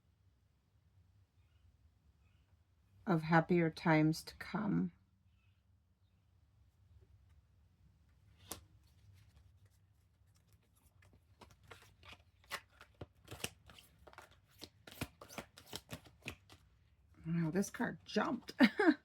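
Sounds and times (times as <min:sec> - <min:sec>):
cards flicking and rustling: 0:08.2 - 0:16.7.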